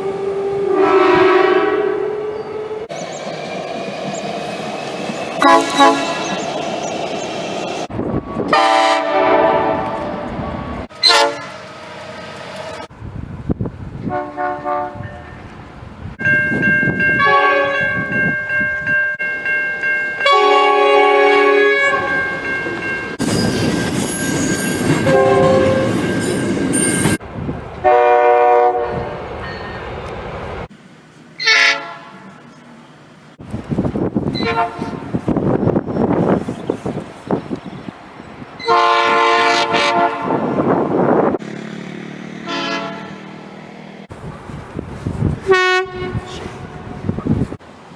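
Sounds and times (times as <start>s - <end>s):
train horns: 0.0s - 2.9s, 5.4s - 6.4s, 8.4s - 11.8s, 14.0s - 15.5s, 16.2s - 19.3s, 20.2s - 22.5s, 24.9s - 26.1s, 27.8s - 29.2s, 31.4s - 32.5s, 34.3s - 35.1s, 38.6s - 40.8s, 42.3s - 43.5s, 45.4s - 47.2s
trains rolling on rails: 0.0s - 47.9s.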